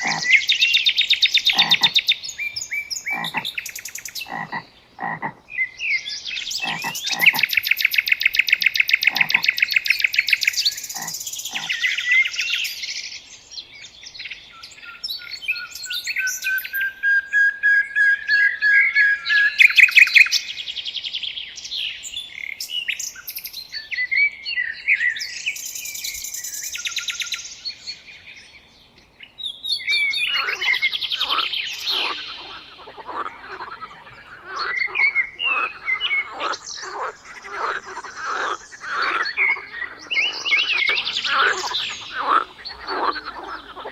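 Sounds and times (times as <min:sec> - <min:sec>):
frogs calling: 0:00.0 - 0:13.0, 0:18.4 - 0:20.6, 0:29.9 - 0:43.9
birds singing: 0:00.0 - 0:43.9.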